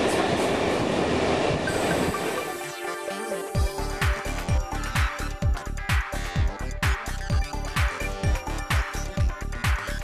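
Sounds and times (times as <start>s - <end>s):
train rumbling along track: 0.0s - 2.5s
background music: 1.4s - 10.0s.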